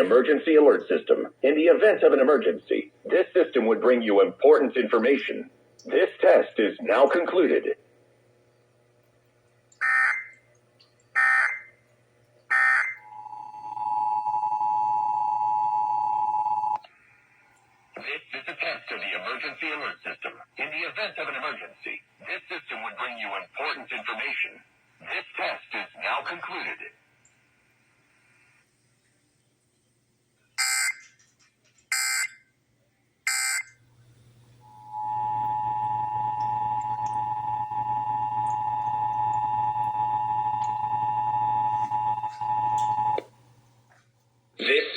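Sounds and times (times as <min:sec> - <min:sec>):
warbling data tone bursts: 0:12.5 - 0:16.8, 0:34.6 - 0:43.3
steady two-tone alert tone: 0:34.6 - 0:43.3.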